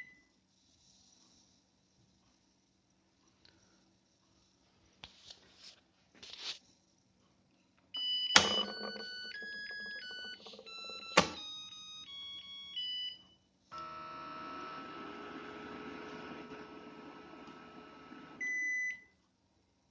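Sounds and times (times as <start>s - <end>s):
electronic beeping melody: 8.0s - 13.2s
rice cooker humming: 8.4s - 12.9s, 13.7s - 19.0s.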